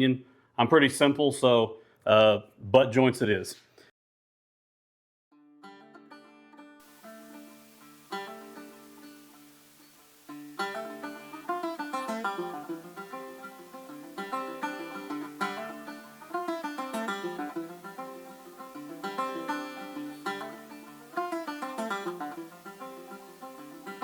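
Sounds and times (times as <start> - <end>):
fast plucked bluegrass strings: 6.9 - 24.0.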